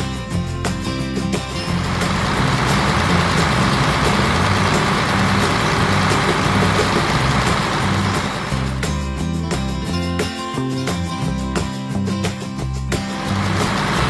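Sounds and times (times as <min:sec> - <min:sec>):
background music: 0:00.0 - 0:14.0
tractor engine running: 0:01.6 - 0:09.2, 0:12.9 - 0:14.0.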